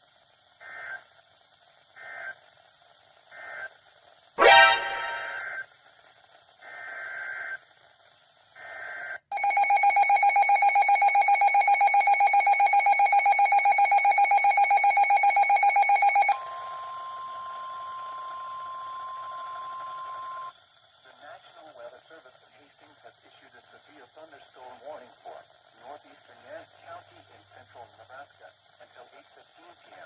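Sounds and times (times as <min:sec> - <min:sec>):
rapidly pulsing alarm tone: 0:04.4 - 0:05.6, 0:09.3 - 0:20.5
screeching digital bursts: 0:04.4 - 0:05.6
steady single tone: 0:04.4 - 0:05.6.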